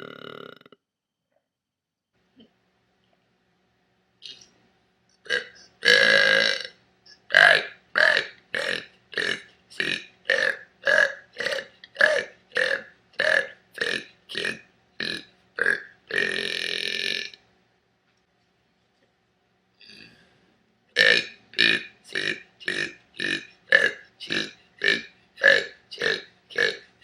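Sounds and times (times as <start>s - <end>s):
person burping: 0.0s - 0.8s, 5.2s - 17.4s, 19.8s - 20.3s, 21.0s - 26.9s.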